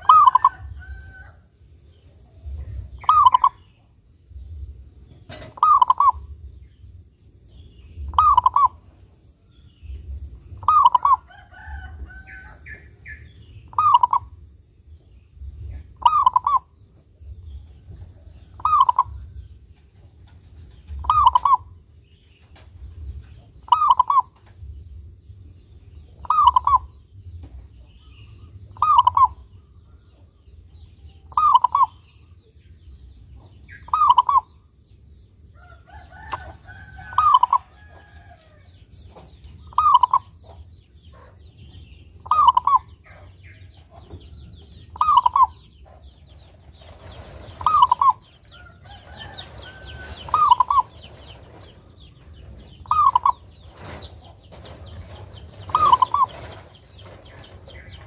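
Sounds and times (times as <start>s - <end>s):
dove cooing: 0.0s - 1.2s, 2.9s - 3.6s, 5.3s - 6.3s, 8.0s - 8.8s, 10.6s - 12.5s, 13.7s - 14.4s, 16.0s - 16.7s, 18.6s - 19.3s, 20.9s - 21.7s, 23.7s - 24.4s, 26.2s - 26.9s, 28.8s - 29.4s, 31.3s - 32.0s, 33.8s - 34.5s, 36.2s - 37.9s, 39.7s - 40.4s, 42.2s - 43.6s, 44.9s - 46.0s, 46.8s - 51.7s, 52.3s - 58.0s
faint bird chirps: 2.0s - 6.9s, 7.5s - 11.7s, 12.4s - 14.4s, 15.7s - 19.6s, 20.9s - 22.6s, 23.3s - 24.5s, 25.9s - 32.7s, 33.4s - 34.8s, 38.9s - 51.6s, 52.2s - 58.0s.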